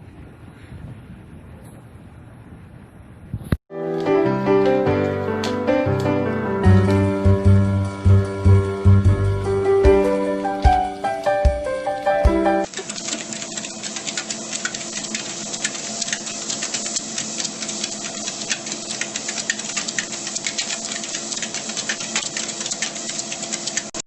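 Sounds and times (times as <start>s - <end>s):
music: 3.7s - 12.7s
rapid clicking: 12.4s - 24.0s.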